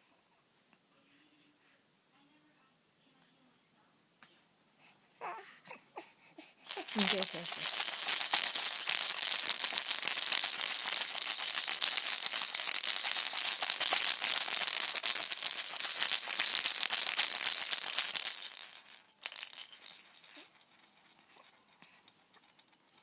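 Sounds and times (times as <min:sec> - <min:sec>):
baby rattle shaken: 0:06.7 - 0:23.0.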